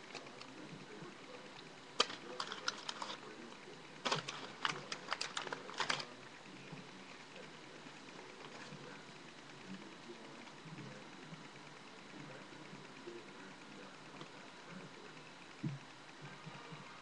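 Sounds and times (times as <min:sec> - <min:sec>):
sharp crackling clicks: 0:01.5 - 0:03.2, 0:04.0 - 0:06.1.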